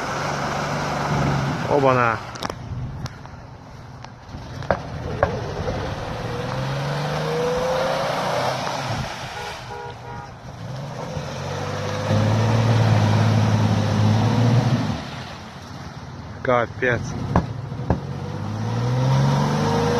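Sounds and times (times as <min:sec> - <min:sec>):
car engine revving: 0:04.2 - 0:15.8, 0:16.8 - 0:19.9.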